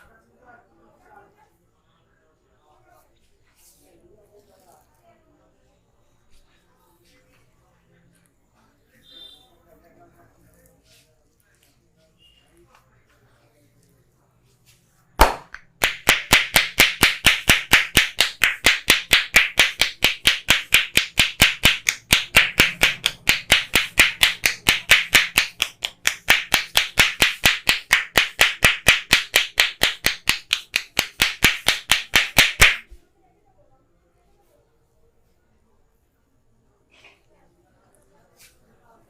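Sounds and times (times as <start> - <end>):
hands slapping in massage strokes: 14.6 - 32.9
sharp slap: 15.2 - 32.9.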